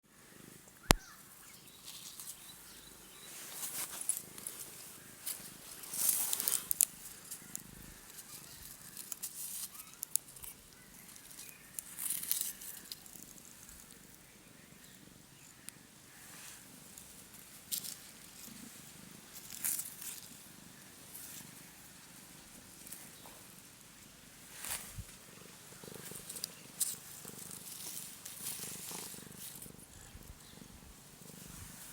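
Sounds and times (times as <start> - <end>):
cat purring: 13.2 - 23.6, 24.8 - 31.9.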